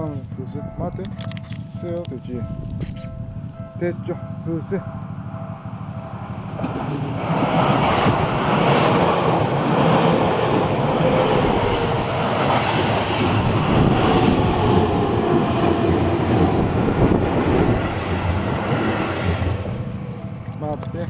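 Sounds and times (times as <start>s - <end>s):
train passing on rails: 0.0s - 21.0s.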